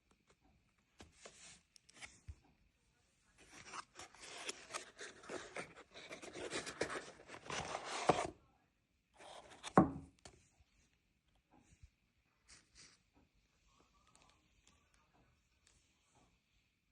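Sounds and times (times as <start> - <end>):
packaging rubbing and scraping: 3.6 - 8.3.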